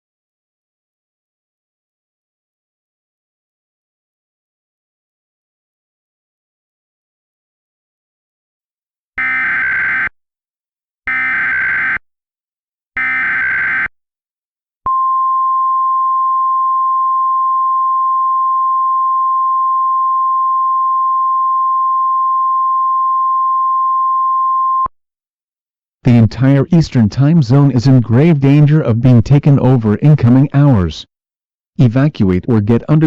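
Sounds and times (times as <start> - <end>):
steady alarm tone: 9.2 - 10.1, 11.1 - 12.0, 13.0 - 13.9.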